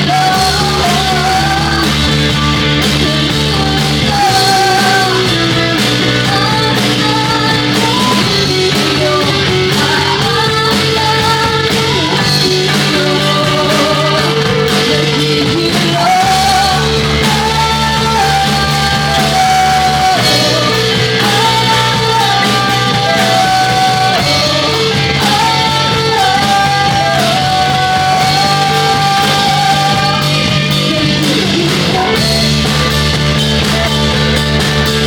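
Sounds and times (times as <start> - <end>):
live rock band playing: 0.0 - 35.0.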